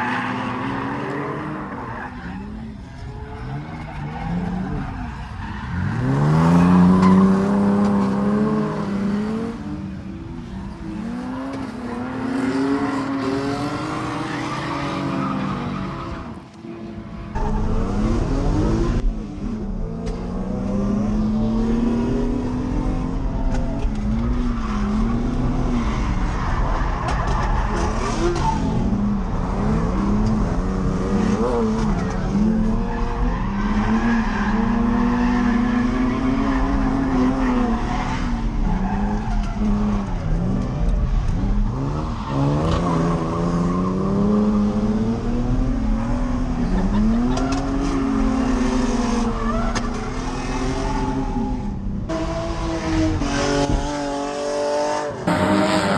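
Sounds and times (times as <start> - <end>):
tyre and road noise: 0.0 - 20.9, 55.2 - 55.9
car engine revving: 0.0 - 55.9.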